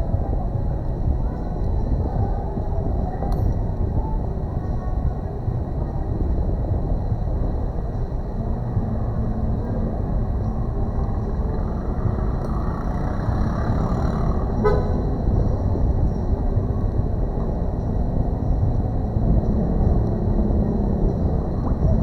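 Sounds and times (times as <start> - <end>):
low background rumble: 0.0 - 22.0.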